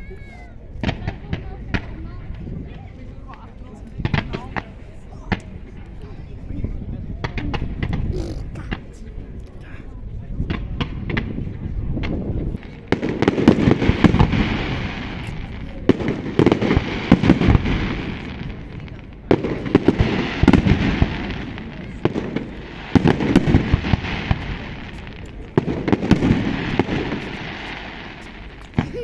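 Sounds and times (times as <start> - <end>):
firework shells bursting: 19.3 - 29.0.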